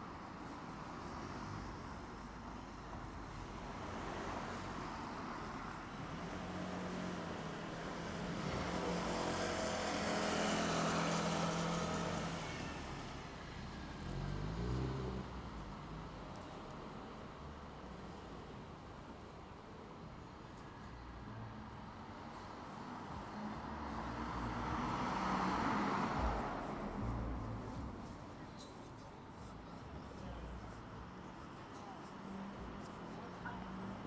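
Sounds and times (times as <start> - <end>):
car passing: 6.1 - 16.3, 21.2 - 28.7.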